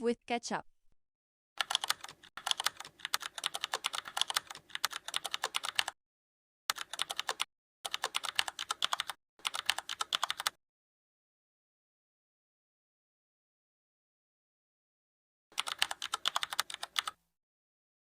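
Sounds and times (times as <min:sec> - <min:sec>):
rapid keyboard typing clicks: 0:01.6 - 0:06.0, 0:06.7 - 0:10.6, 0:15.5 - 0:17.2.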